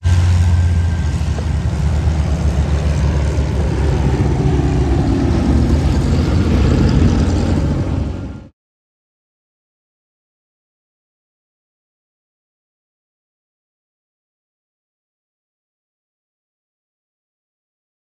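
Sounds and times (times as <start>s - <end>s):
engine droning: 0.0s - 8.5s.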